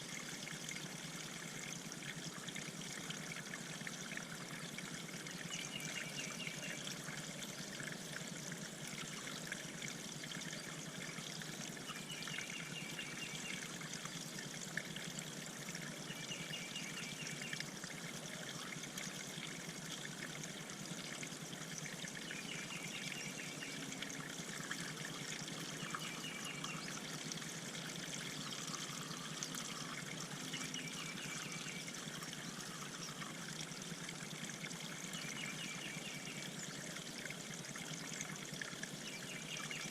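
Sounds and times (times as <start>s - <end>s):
water trickling into a pond: 0.0s - 39.9s.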